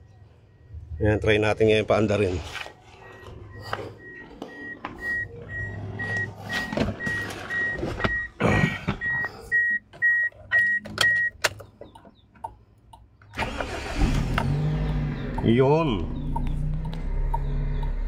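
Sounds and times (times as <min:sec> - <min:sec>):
car warning chime beeping: 0:00.4 - 0:08.4, 0:09.0 - 0:11.5, 0:14.6 - 0:18.0.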